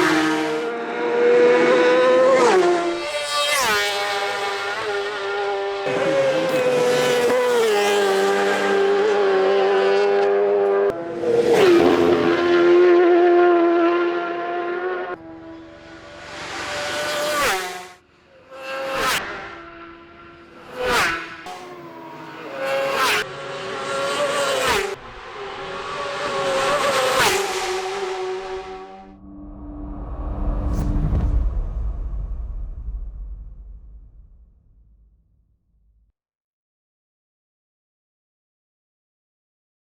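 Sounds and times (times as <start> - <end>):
racing motorcycle engines revving: 0.0 - 29.4.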